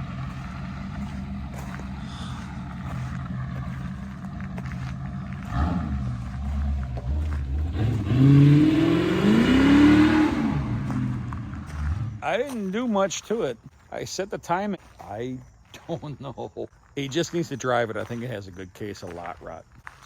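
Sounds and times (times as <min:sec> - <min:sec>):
car engine accelerating: 0:00.0 - 0:12.4.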